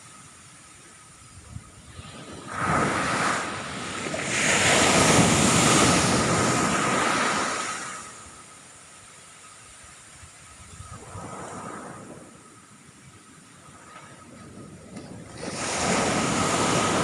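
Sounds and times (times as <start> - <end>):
ocean wave breaking: 1.9 - 8.5, 15.2 - 17.0.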